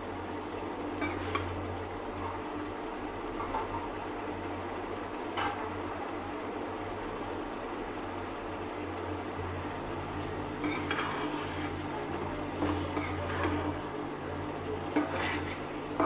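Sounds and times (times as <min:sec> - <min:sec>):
spoon scraping pot: 0:10.6 - 0:11.8, 0:14.9 - 0:15.8.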